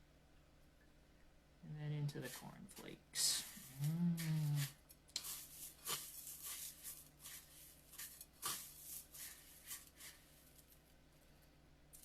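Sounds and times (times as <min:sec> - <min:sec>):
low steady hum: 0:00.0 - 0:12.0
crunching and rustling of cornflakes: 0:02.3 - 0:11.0.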